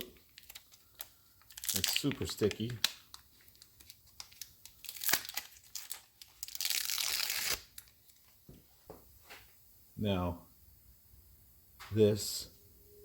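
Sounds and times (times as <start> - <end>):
small crinkles and clicks: 0.0 - 8.4.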